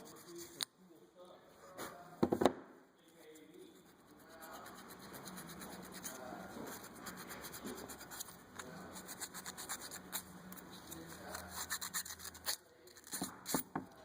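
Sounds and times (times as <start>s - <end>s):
sandpaper scrubbing metal: 3.9s - 10.3s, 10.9s - 13.6s.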